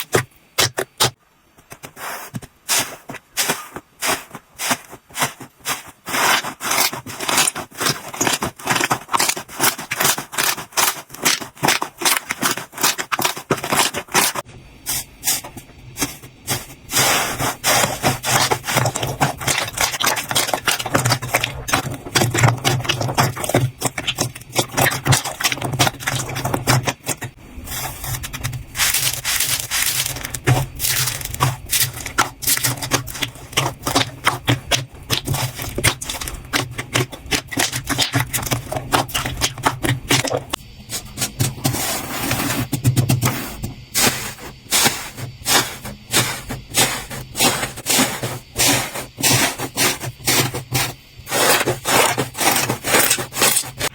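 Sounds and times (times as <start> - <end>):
slime crackling and popping: 28.0 - 40.6.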